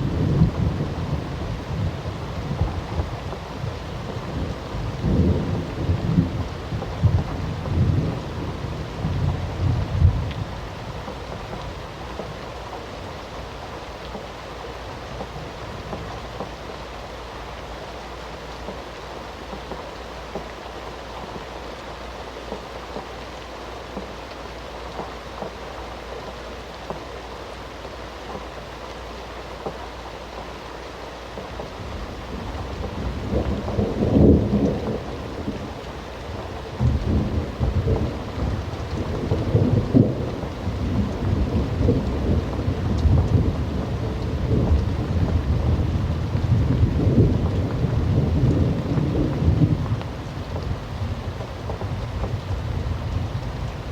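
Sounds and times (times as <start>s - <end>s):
thunder rumbling and cracking: 0.0s - 12.8s, 31.6s - 53.9s
steady rain falling: 0.0s - 53.9s.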